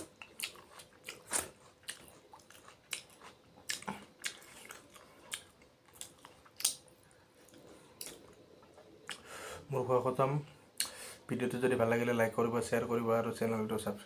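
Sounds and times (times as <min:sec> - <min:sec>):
close-up chewing: 0:00.0 - 0:09.3.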